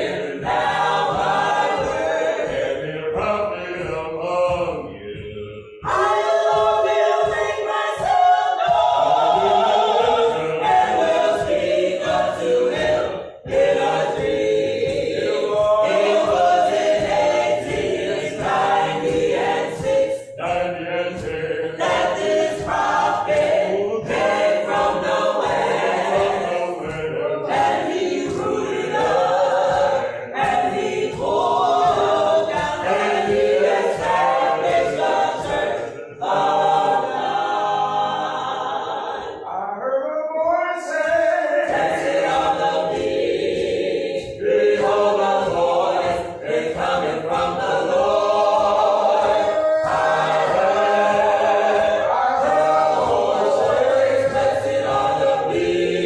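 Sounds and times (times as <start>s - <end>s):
choir singing gospel a cappella: 0.0s - 56.0s.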